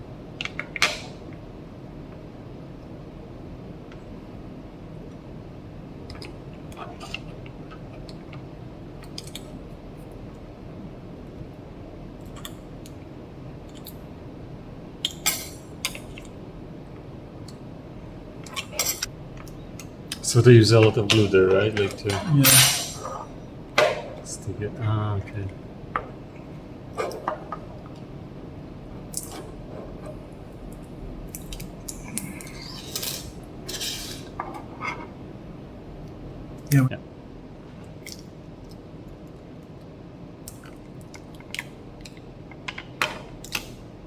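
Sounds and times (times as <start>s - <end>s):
steady low hum: 0.0s - 42.5s
metal tools clicking and scraping: 15.3s - 15.6s, 18.5s - 19.1s, 20.9s - 23.3s, 32.4s - 35.1s.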